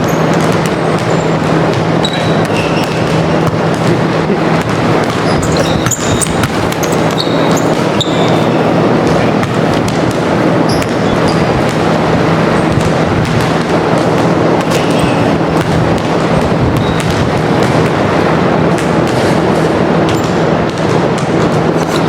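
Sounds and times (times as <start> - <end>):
sneaker squeaks: 0.0 - 11.8, 14.6 - 15.8, 16.6 - 18.0, 18.8 - 22.0
basketball bouncing: 0.0 - 22.0
constant low hum: 0.0 - 22.0
crowd din: 0.0 - 22.0.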